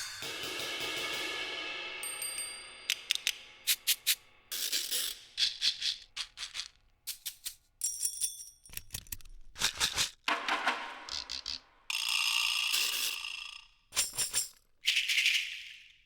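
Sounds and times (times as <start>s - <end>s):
shaker and rattle strokes: 3.6s - 4.2s, 9.6s - 11.6s.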